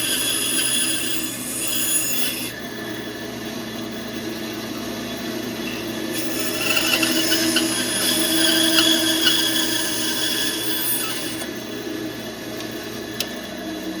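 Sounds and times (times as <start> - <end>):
band saw cutting wood: 0.0 - 2.6, 6.1 - 11.5
click: 12.6 - 13.4.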